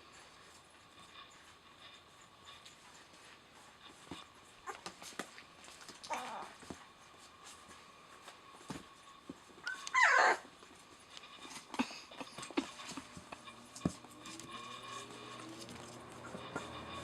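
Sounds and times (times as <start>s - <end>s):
puppy squealing: 9.7s - 10.5s, 16.2s - 16.8s.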